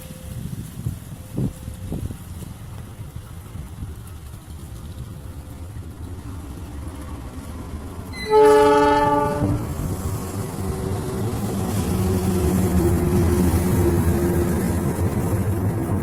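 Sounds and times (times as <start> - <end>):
locomotive engine rumble: 0.0 - 16.0
locomotive horn blast: 8.1 - 9.7.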